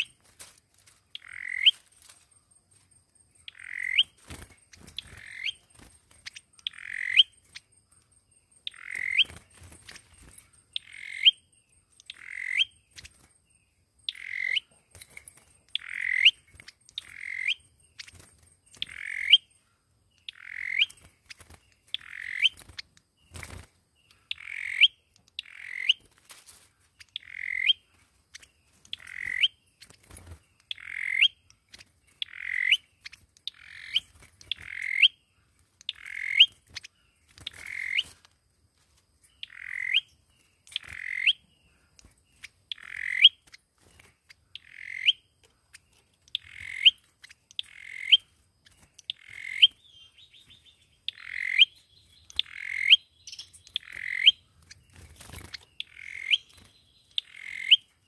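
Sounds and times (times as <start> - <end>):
faint rapid twitter: 0.0 - 58.0.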